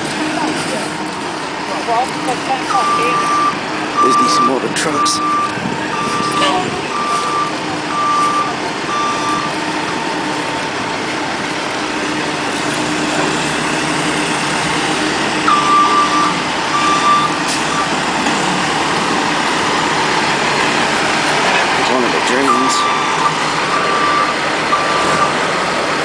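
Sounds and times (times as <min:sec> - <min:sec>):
vehicle back-up alarm beeping: 0:00.0 - 0:25.5
outdoor machinery noise: 0:00.0 - 0:26.0
traffic noise: 0:00.0 - 0:26.0
vehicle engine running: 0:00.0 - 0:26.0.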